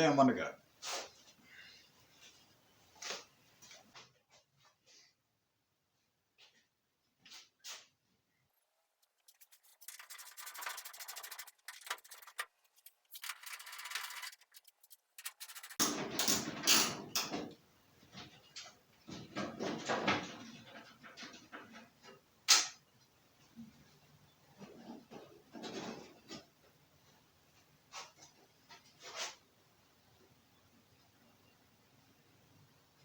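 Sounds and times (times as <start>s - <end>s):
fast rattling clicks: 9.0s - 16.0s
knocks and scrapes: 9.0s - 17.5s.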